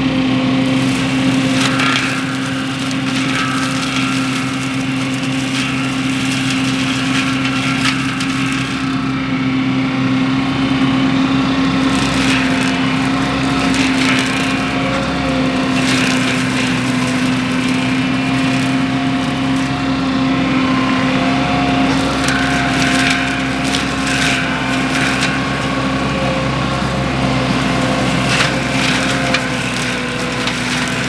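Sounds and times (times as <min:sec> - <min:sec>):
machine humming: 0:00.0 - 0:31.0
mulcher crackles: 0:00.0 - 0:31.0.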